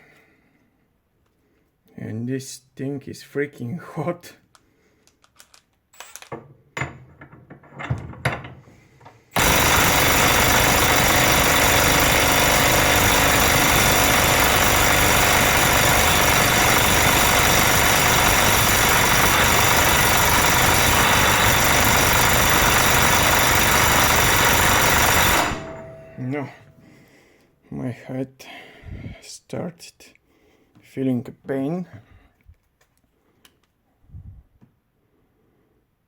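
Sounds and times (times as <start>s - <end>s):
impact wrench hammering: 9.4s - 26.5s.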